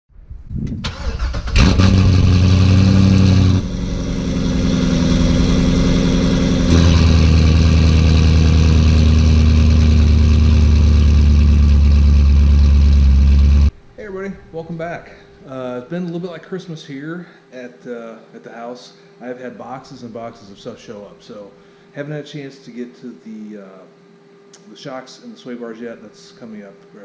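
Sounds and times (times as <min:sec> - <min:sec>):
car engine starting and idling: 0:00.8 - 0:13.8.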